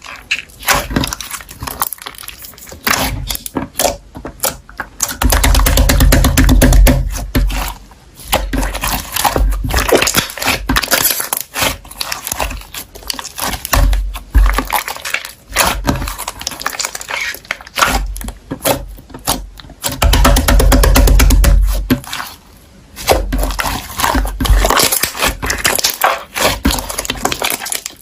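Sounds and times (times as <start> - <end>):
slime squished by hand: 6.8 - 20.3.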